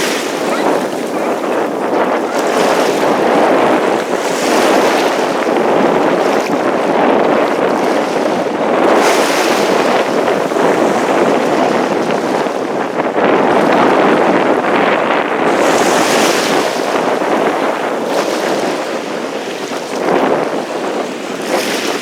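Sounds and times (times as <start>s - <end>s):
sea waves washing on shore: 0.0s - 22.0s
wind on microphone: 0.0s - 22.0s.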